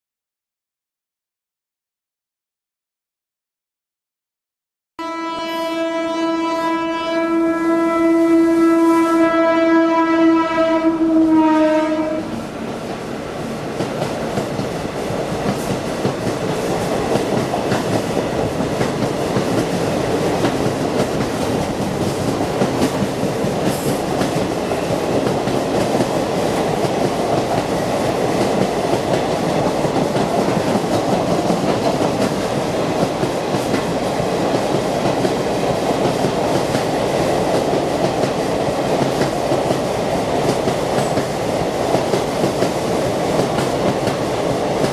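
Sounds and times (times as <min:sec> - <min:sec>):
train horn: 0:05.0 - 0:12.6
train running at speed: 0:05.0 - 0:44.9.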